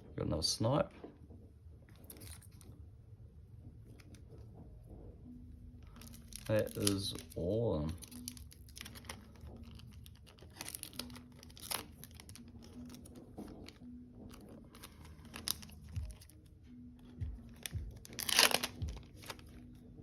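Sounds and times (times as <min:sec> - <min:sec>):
cards being handled: 0:05.8 - 0:20.0
foil wrapper crinkling and tearing: 0:05.9 - 0:16.4, 0:17.2 - 0:19.7.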